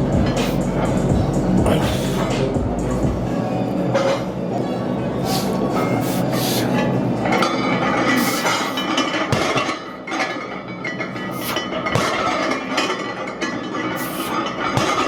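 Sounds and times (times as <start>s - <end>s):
barbell plates clinking: 7.2s - 15.0s
barbell knocks: 11.9s - 12.5s.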